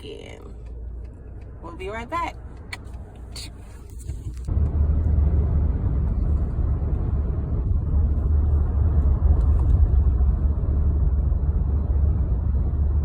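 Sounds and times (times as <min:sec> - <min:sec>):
pickup truck driving rumble: 0:04.3 - 0:13.0.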